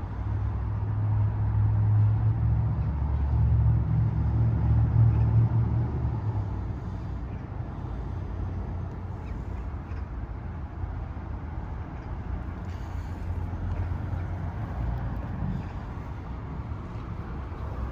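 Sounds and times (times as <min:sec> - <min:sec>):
car engine rumbling: 0:07.7 - 0:17.9.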